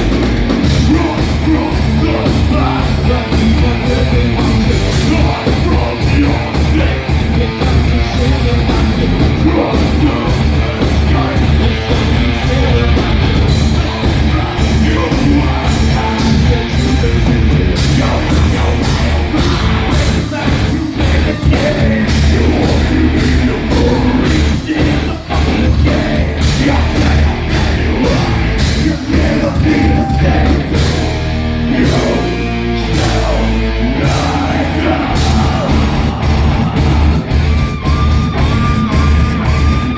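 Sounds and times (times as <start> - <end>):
bass guitar: 0.0 - 39.9
distorted electric guitars: 0.0 - 39.9
drums: 0.0 - 39.9
person yelling vocals: 29.4 - 30.7.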